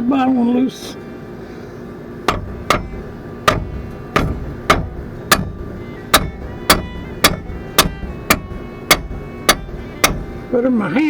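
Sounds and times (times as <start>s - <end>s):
hammer striking metal: 2.3s - 10.6s.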